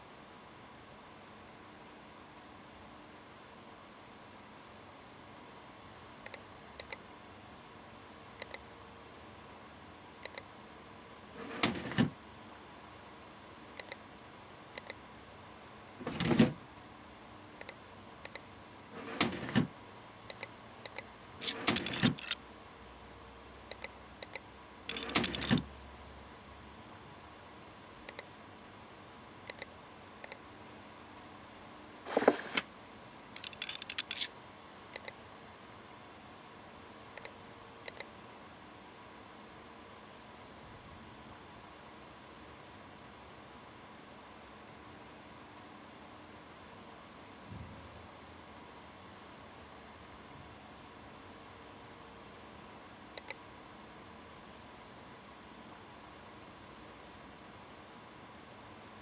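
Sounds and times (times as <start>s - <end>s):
faint steady hum: 0.0s - 59.0s
sharp clicks: 6.3s - 7.0s, 8.4s - 8.6s, 10.2s - 10.5s, 13.8s - 14.0s, 14.8s - 15.0s, 17.6s - 18.4s, 20.3s - 22.4s, 23.7s - 25.6s, 28.1s - 28.3s, 29.5s - 30.4s, 33.4s - 34.3s, 35.0s - 35.2s, 37.2s - 38.1s
scraping and rustling handling noises: 32.1s - 32.6s.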